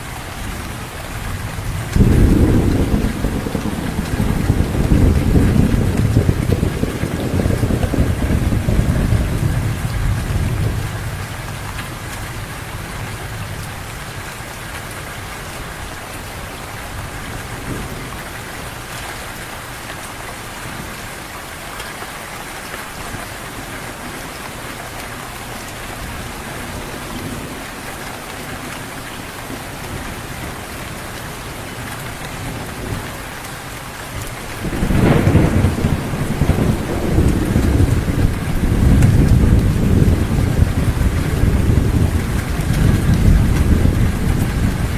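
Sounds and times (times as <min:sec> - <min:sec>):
heavy rain falling: 0:00.0 - 0:44.9
low rumble of thunder: 0:00.4 - 0:18.8, 0:34.2 - 0:44.9.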